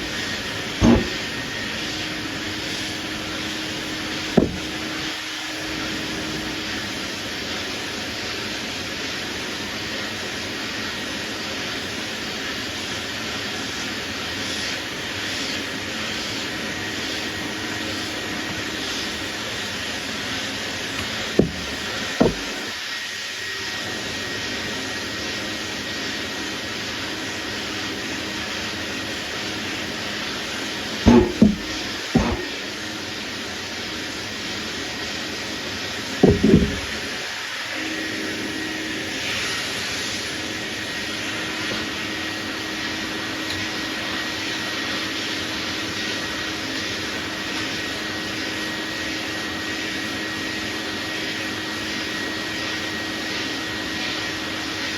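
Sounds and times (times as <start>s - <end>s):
short knocks: 0.8s - 1.4s, 4.3s - 4.8s, 21.0s - 22.7s, 31.1s - 32.6s, 36.2s - 37.0s.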